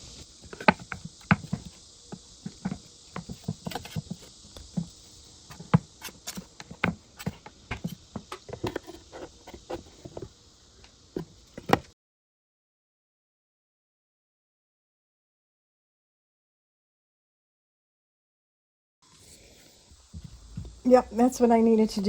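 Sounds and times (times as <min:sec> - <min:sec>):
metal tool prying wood: 0:00.4 - 0:10.0.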